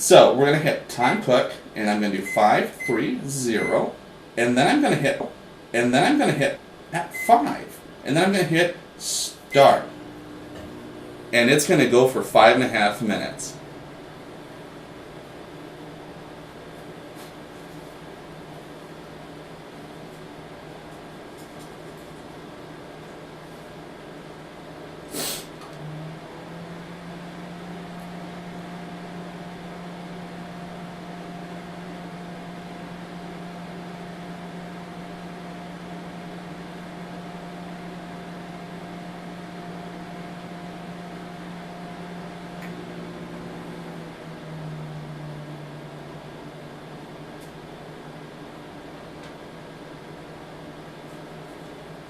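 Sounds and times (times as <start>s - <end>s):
microwave oven humming: 0.0s - 52.0s
high steady tone: 9.5s - 12.4s.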